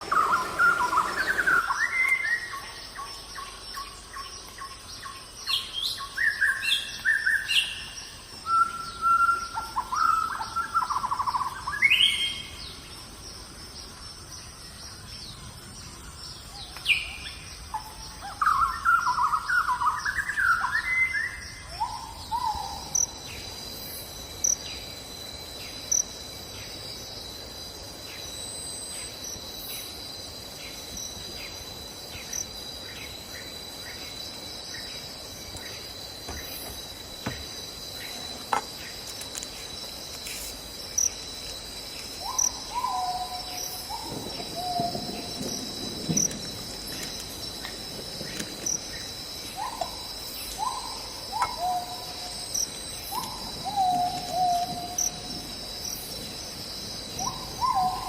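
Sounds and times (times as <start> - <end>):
birds chirping and trilling: 0.0 - 12.9
high insect buzz with ticks: 0.0 - 20.5, 22.2 - 58.0.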